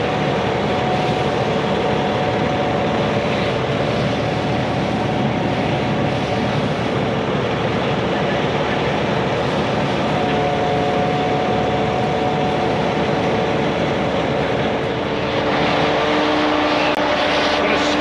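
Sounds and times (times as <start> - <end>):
hydraulic whine: 0.0 - 18.0
lower whine: 0.0 - 18.0
truck engine droning: 0.0 - 18.0.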